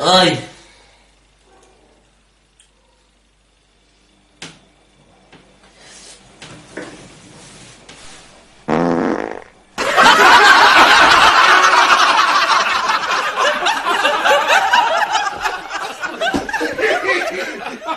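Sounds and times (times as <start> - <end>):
fart: 8.6 - 9.6
loud laughter: 9.8 - 17.9.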